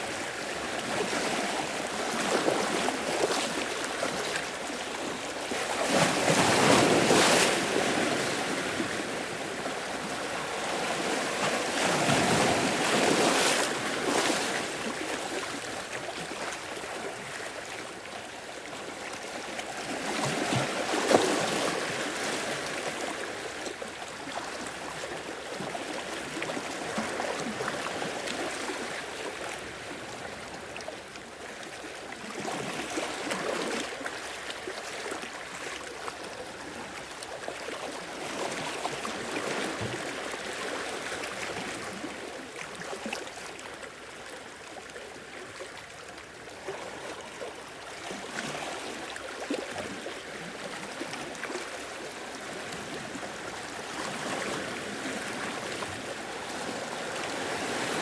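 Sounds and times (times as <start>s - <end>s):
sea waves washing on shore: 46.5s - 58.0s.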